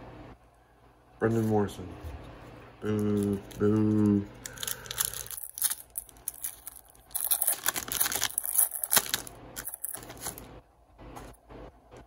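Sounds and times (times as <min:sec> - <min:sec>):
wrapper and cards rustling: 0:03.0 - 0:10.5.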